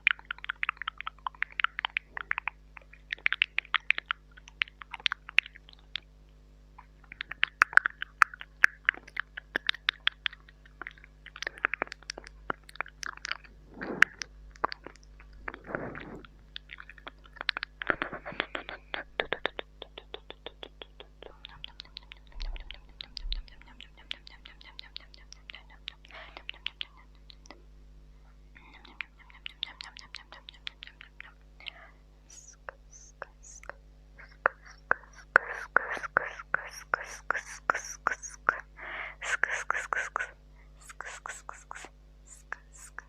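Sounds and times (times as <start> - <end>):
tongue clicks and lip smacks: 0.0 - 27.6, 28.6 - 43.0
wet slurping: 10.7 - 19.5.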